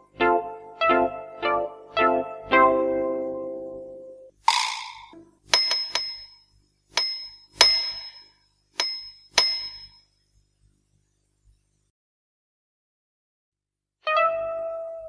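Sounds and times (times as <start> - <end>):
small metal bell dinging: 5.6 - 10.1.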